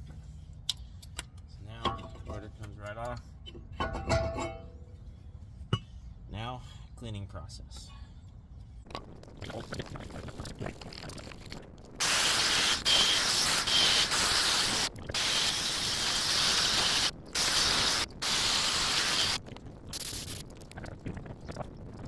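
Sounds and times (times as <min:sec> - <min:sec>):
aerosol spray hissing: 0:12.0 - 0:19.4.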